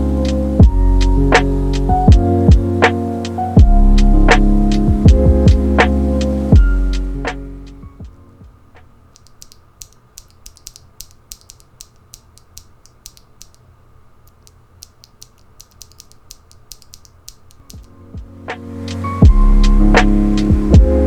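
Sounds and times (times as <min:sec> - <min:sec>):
keyboard switches clicking: 0:09.1 - 0:13.7, 0:14.3 - 0:17.9.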